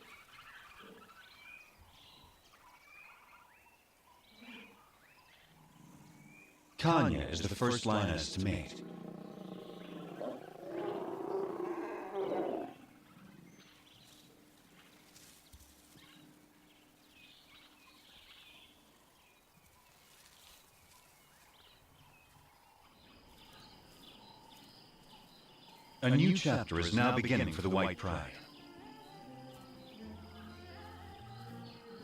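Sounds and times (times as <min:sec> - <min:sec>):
quiet bush background: 0:00.0 - 0:32.0
lions growling: 0:07.9 - 0:13.7.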